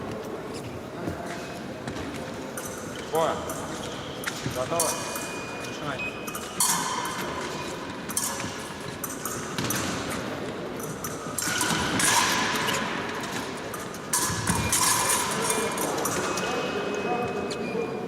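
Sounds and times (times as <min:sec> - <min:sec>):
fencing blades clinking: 0:10.8 - 0:16.6.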